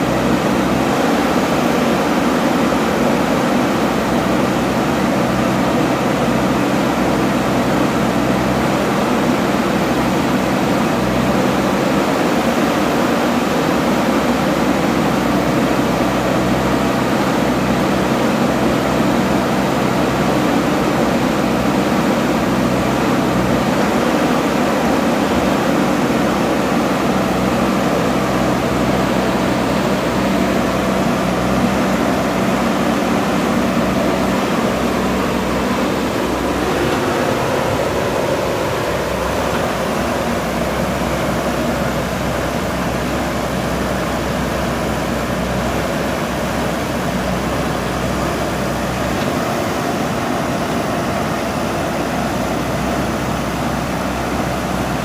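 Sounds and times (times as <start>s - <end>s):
diesel engine running: 0.0s - 55.0s
dense rushing noise: 17.7s - 45.1s.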